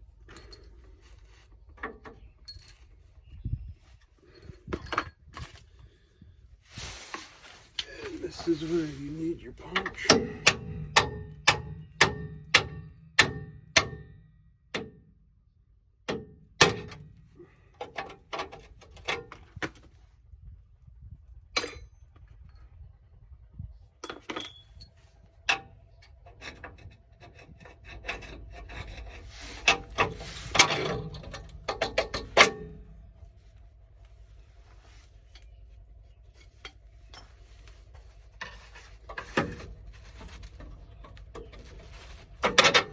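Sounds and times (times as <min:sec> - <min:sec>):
tools clattering: 0:00.2 - 0:01.2, 0:04.2 - 0:05.8, 0:07.8 - 0:14.0, 0:28.1 - 0:33.1, 0:36.4 - 0:42.9
metallic tool clinks and scrapes: 0:00.3 - 0:01.2
hammer striking metal punch: 0:10.1 - 0:14.1.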